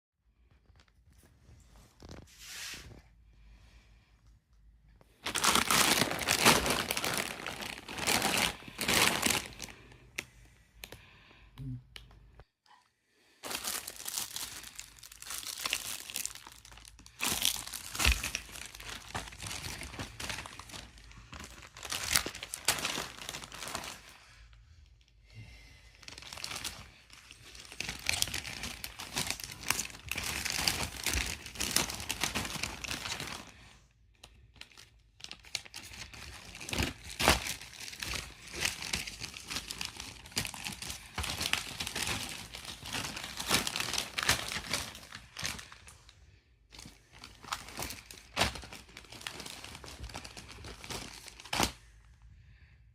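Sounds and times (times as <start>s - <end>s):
plastic bags crinkling: 5.1s - 10.3s, 13.4s - 24.2s, 26.0s - 46.0s, 46.6s - 51.8s.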